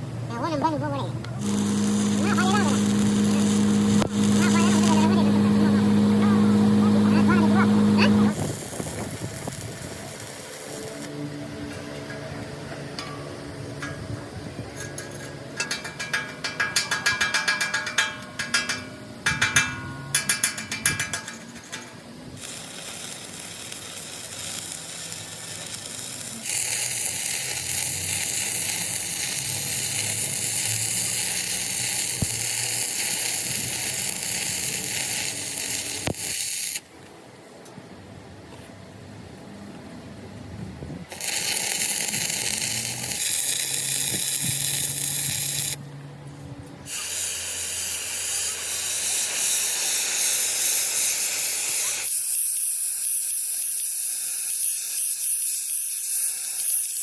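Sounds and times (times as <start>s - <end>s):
steady hissing: 46.9s - 56.8s.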